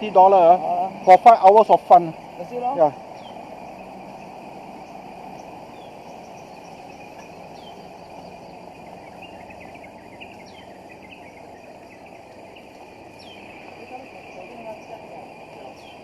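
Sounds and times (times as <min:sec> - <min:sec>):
bird calling: 0:00.0 - 0:16.0
bird chirping quickly: 0:00.0 - 0:16.0
steady low hum: 0:00.0 - 0:16.0.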